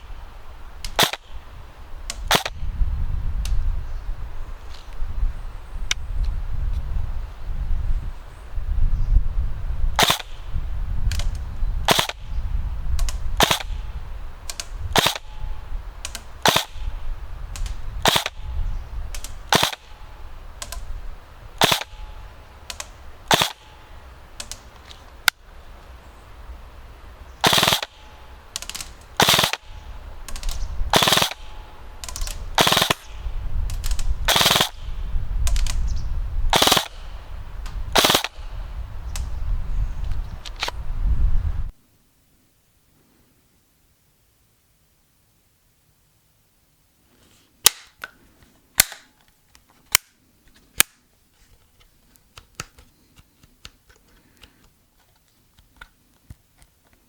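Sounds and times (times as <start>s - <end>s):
airsoft gun firing bursts: 0.8s - 2.6s, 10.0s - 10.5s, 11.2s - 12.4s, 13.0s - 20.8s, 21.6s - 24.7s, 27.4s - 35.9s, 36.5s - 38.7s.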